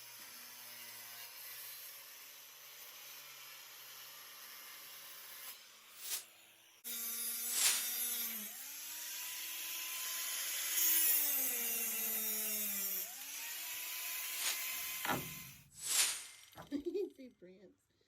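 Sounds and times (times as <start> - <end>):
electric power tool motor running: 5.4 - 16.1.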